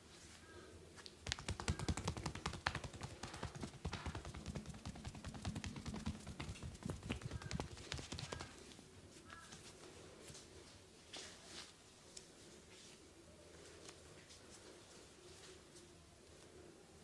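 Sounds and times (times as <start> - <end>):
fast hand taps: 1.2 - 8.6.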